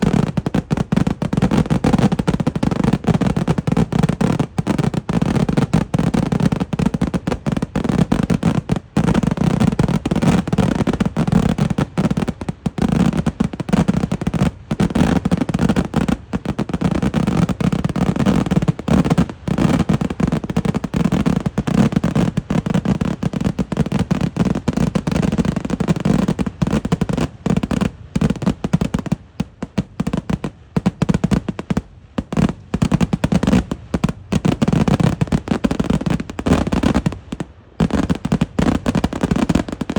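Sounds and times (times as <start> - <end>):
fireworks barrage of explosions: 0.0 - 39.9.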